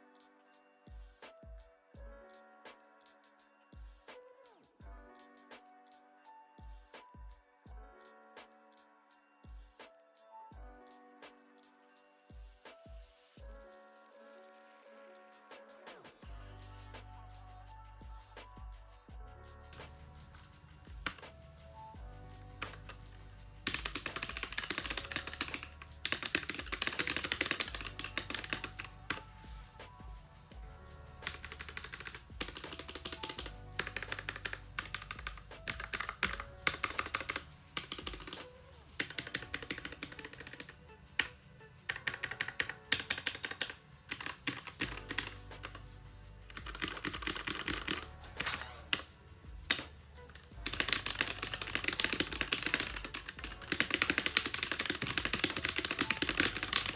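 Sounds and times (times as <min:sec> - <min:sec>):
soft background music: 0:00.0 - 0:56.9
mechanical keyboard typing: 0:19.8 - 0:56.9.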